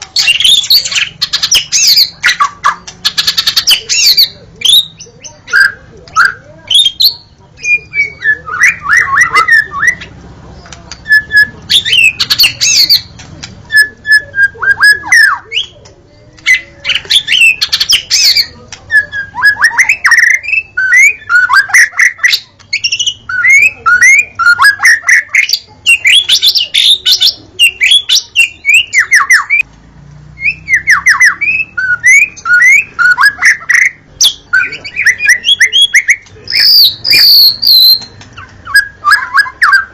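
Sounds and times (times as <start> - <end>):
songbird singing whistled phrases: 0.2 - 10.2, 10.9 - 15.8, 16.4 - 29.7, 30.4 - 39.9.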